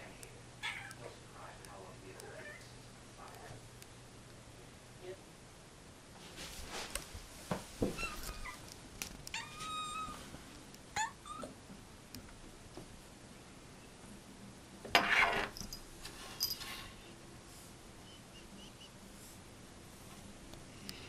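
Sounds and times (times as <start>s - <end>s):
kitten chirping and meowing: 8.0s - 8.6s, 9.3s - 10.2s, 11.0s - 11.6s.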